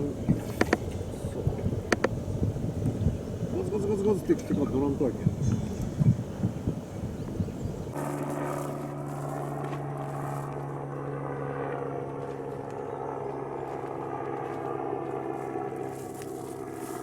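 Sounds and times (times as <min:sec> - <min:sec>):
boat engine droning: 0:00.0 - 0:17.0.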